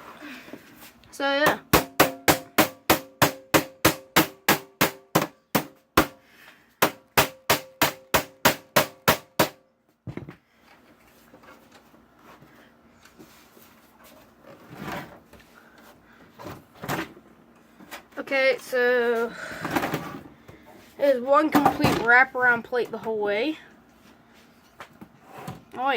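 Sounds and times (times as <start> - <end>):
hammer blows on steel case: 1.5 - 6.2.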